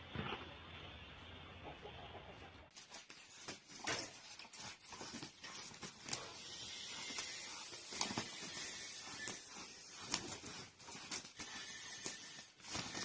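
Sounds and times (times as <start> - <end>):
rooster scuffing and rustling: 2.7 - 13.0.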